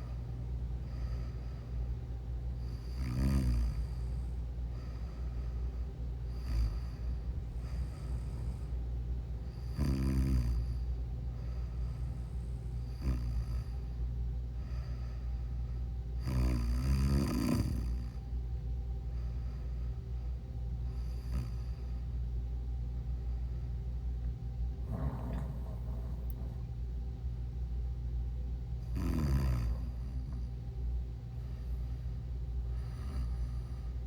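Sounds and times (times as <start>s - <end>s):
soft breath sounds: 0.0s - 16.8s, 17.5s - 27.3s, 28.8s - 34.0s
steady low hum: 0.0s - 34.0s
person snoring: 2.7s - 4.2s, 6.3s - 8.7s, 9.5s - 10.8s, 12.8s - 13.8s, 16.2s - 18.2s, 21.0s - 21.7s, 24.8s - 26.7s, 28.8s - 30.5s.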